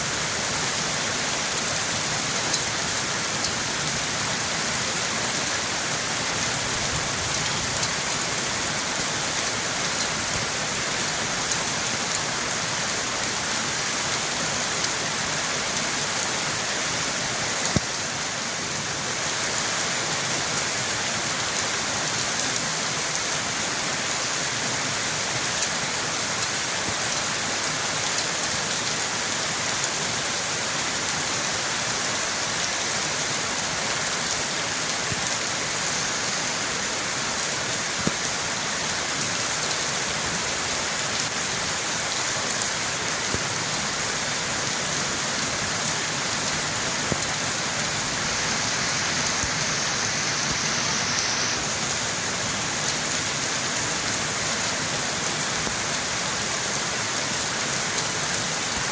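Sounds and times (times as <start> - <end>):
rain pattering: 0.7 - 18.4, 32.4 - 58.9.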